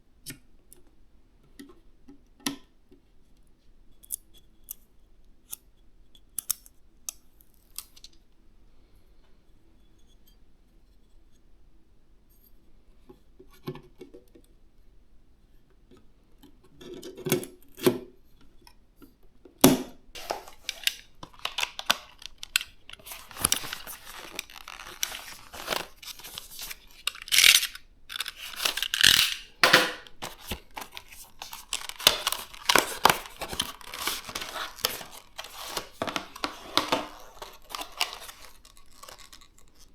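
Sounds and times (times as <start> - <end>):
packaging rustling: 20.2 - 39.9.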